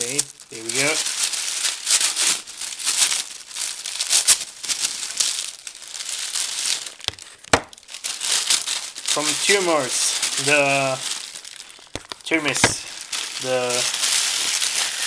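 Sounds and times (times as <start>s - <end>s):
paper wrapping crinkling: 0.0s - 15.0s.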